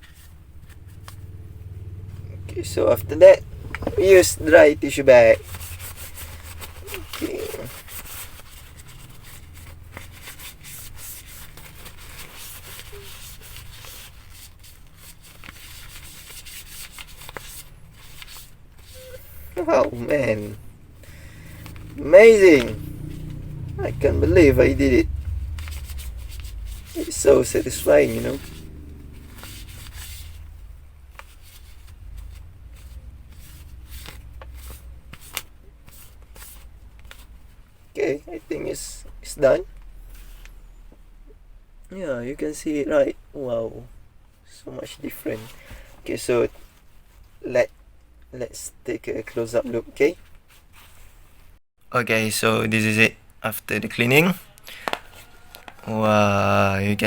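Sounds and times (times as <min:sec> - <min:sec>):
tissue rubbing phone case: 0:03.2 - 0:23.4, 0:25.3 - 0:37.7.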